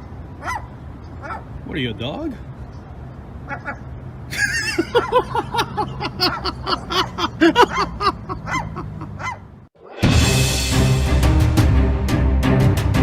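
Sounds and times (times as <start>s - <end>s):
loud music: 10.0s - 13.0s.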